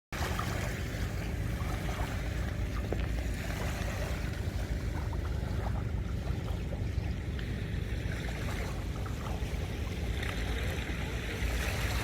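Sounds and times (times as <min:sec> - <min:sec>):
sea waves washing onto beach: 0:00.2 - 0:12.0.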